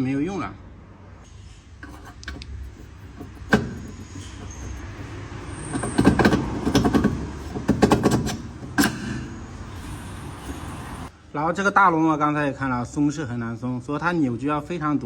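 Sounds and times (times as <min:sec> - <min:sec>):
metal tools knocking and clinking: 0:01.8 - 0:09.8.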